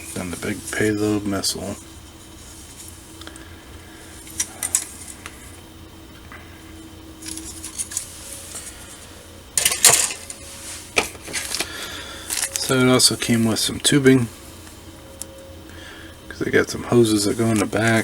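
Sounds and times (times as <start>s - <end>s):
plastic bags rustling: 7.3s - 14.0s.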